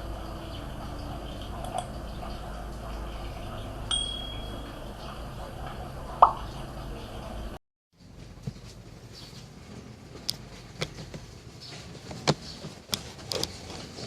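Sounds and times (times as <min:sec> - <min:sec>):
steady low hum: 0:00.0 - 0:14.0
short high metallic ring: 0:03.9 - 0:04.8.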